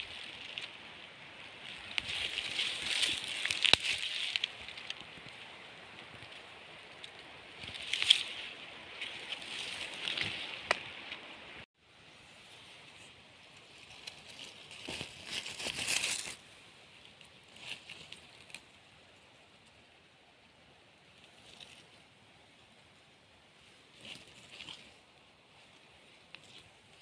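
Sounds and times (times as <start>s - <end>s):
rustling forest floor litter: 0.0s - 27.0s
twigs snapping: 1.6s - 11.4s.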